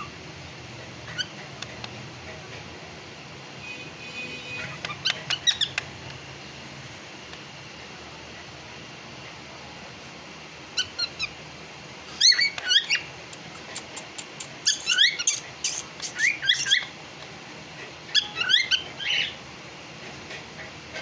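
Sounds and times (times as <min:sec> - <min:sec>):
cockatiel chirping: 0:04.6 - 0:05.9, 0:12.2 - 0:16.9
faint sharp clicks: 0:13.3 - 0:14.6.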